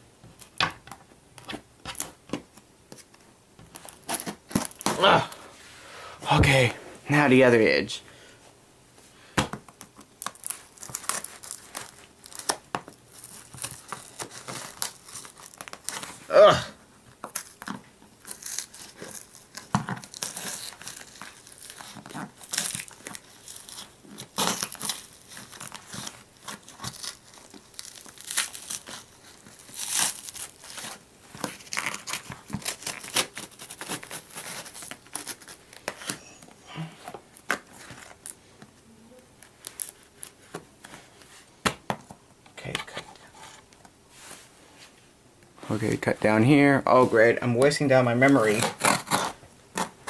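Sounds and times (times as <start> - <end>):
packaging crinkling and tearing: 1.4 - 5.1, 9.7 - 16.3, 17.2 - 36.4, 37.0 - 38.7, 39.3 - 41.3, 47.6 - 50.0
scissors cutting packaging: 10.2 - 16.2, 17.2 - 36.4, 48.3 - 50.0.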